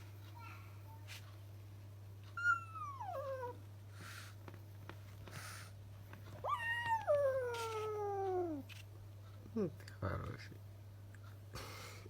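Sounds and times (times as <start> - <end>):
cat meowing: 6.4 - 8.7.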